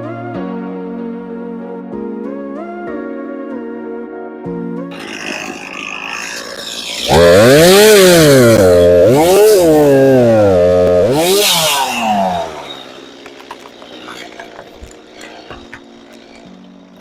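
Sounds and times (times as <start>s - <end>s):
chainsaw revving: 4.9s - 17.0s.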